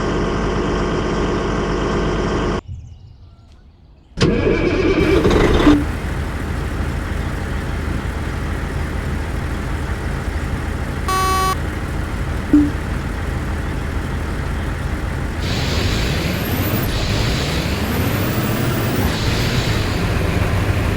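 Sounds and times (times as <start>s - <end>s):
engine blip: 1.8s - 20.9s
vehicle engine idling: 4.2s - 20.9s
short beep: 11.1s - 11.6s, 12.5s - 12.8s.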